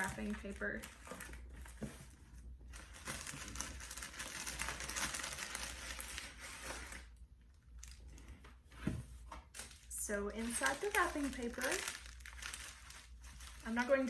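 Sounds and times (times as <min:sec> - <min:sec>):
wrapping paper crinkling: 0:02.7 - 0:08.4, 0:09.5 - 0:14.0.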